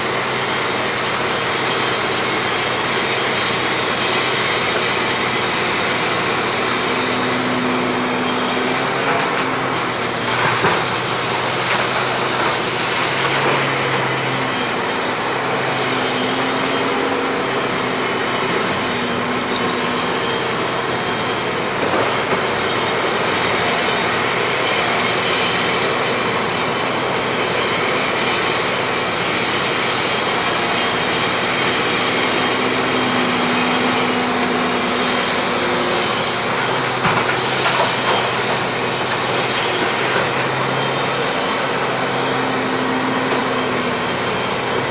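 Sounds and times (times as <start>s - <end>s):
excavator diesel engine running: 0.0s - 44.9s.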